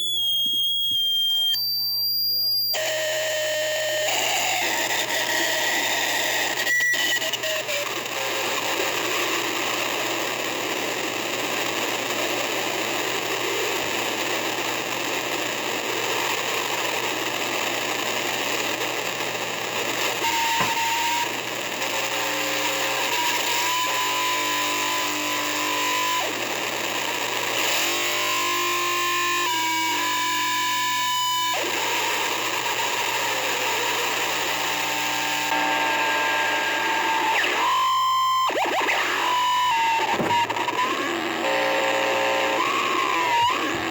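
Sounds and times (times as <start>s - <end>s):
high held tones: 0.0s - 3.0s
distorted harsh noise wall: 0.0s - 43.9s.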